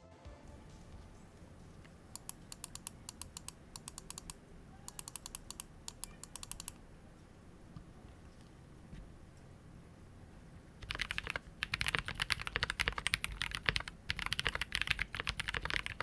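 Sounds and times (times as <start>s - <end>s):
mechanical keyboard typing: 2.2s - 6.8s, 10.8s - 16.0s.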